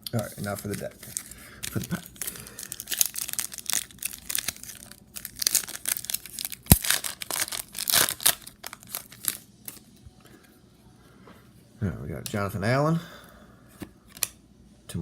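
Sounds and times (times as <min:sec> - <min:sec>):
wrapper tearing and crinkling: 0:00.1 - 0:09.9.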